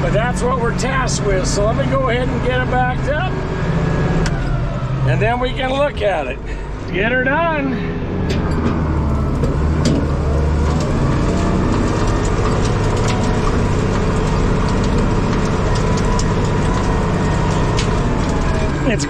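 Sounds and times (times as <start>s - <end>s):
tractor diesel engine running: 0.0s - 19.0s
sharp rattles and clicks: 8.4s - 19.0s.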